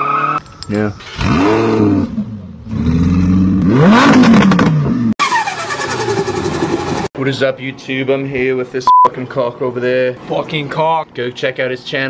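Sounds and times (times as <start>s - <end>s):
car engine revving: 0.7s - 7.1s.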